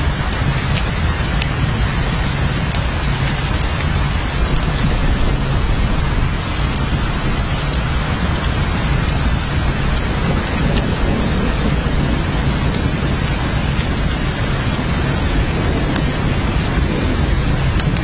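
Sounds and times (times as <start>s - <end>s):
heavy rain: 0.0s - 18.0s
sharp rain drop ticks: 0.0s - 18.0s
low rumble: 0.1s - 18.0s.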